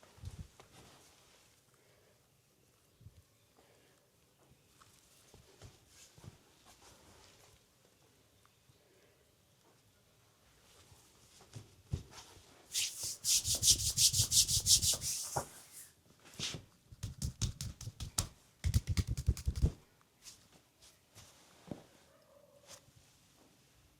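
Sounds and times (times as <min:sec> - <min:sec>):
hands rubbing on skin: 0:12.7 - 0:15.9, 0:16.9 - 0:19.8
hand tapping on skin: 0:16.9 - 0:19.8.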